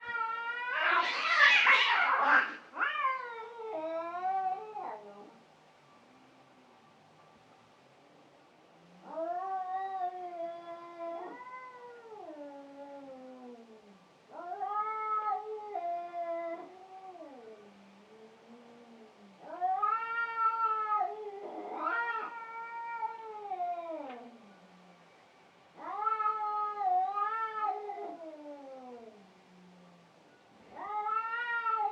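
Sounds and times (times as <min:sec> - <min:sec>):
cat screeching: 0:00.0 - 0:04.9, 0:19.5 - 0:23.8, 0:25.8 - 0:28.2, 0:30.7 - 0:31.9
cats yowling in a fight: 0:00.0 - 0:05.4, 0:09.0 - 0:24.7, 0:25.7 - 0:29.8, 0:30.6 - 0:31.9.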